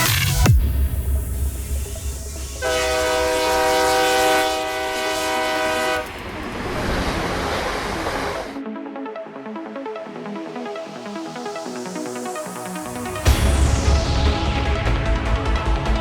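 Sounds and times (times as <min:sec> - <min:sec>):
rushing noise: 0:00.5 - 0:08.6
train horn blast: 0:02.6 - 0:06.3.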